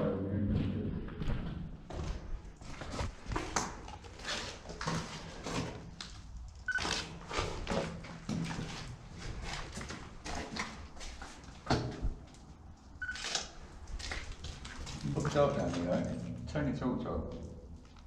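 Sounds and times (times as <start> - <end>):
footsteps and scuffing: 0.5 - 6.1, 6.9 - 12.6, 13.6 - 16.4.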